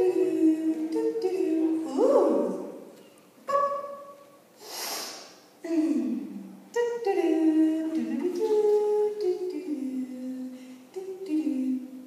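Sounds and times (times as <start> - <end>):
person humming a slow tune: 0.0 - 2.5, 5.6 - 12.0.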